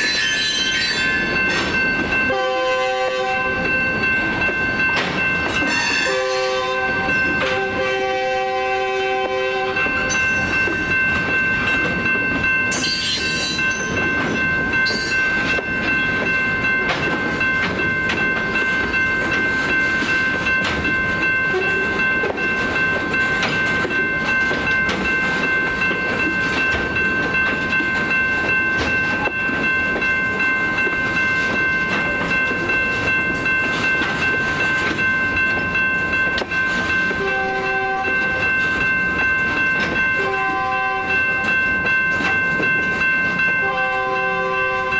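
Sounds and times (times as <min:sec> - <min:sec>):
rail clatter: 0:00.0 - 0:02.4, 0:03.2 - 0:08.0, 0:09.1 - 0:44.9
train rumble: 0:00.0 - 0:44.9
locomotive air horn blast: 0:02.3 - 0:03.5, 0:05.7 - 0:06.8, 0:07.4 - 0:09.8.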